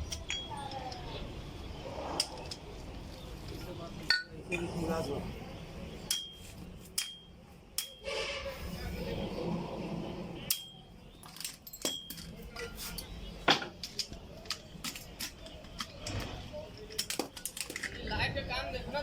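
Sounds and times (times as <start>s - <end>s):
metal tools clinking: 10.5s - 18.1s.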